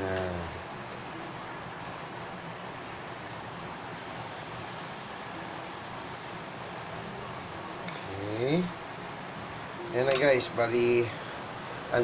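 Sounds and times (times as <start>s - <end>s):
batter sizzling in oil: 3.7s - 12.0s
high hiss: 3.8s - 12.0s.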